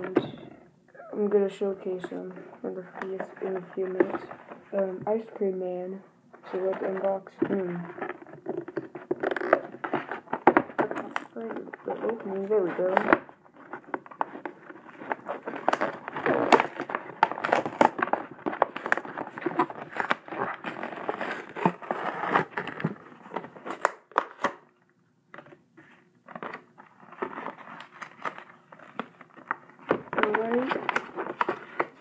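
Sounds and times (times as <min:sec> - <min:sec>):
packaging crinkling and rustling: 0:06.4 - 0:24.7, 0:25.3 - 0:32.0.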